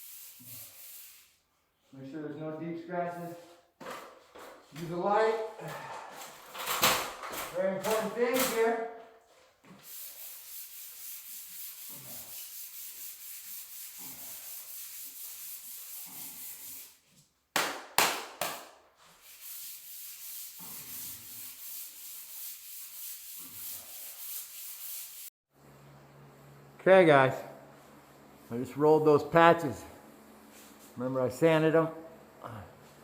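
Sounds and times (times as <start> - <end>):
sanding block rasping on plaster: 0.0 - 1.4, 9.8 - 17.2, 19.0 - 25.3.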